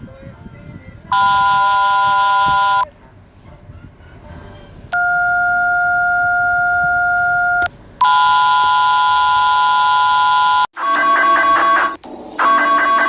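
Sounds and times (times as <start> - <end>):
harsh steady alert tone: 5.0 - 13.0.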